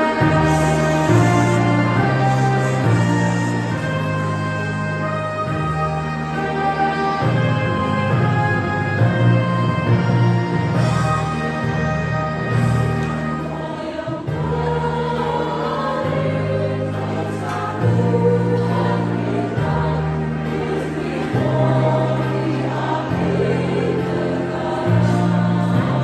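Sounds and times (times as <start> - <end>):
women's choir singing: 0.0 - 5.2, 12.5 - 26.0
held low accompaniment notes: 0.0 - 26.0.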